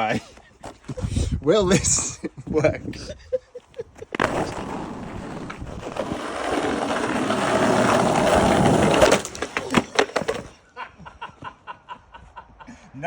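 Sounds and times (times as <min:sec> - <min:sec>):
skateboard wheels rolling on pavement: 0:03.8 - 0:11.4
skateboard grinding on curb: 0:04.0 - 0:10.6.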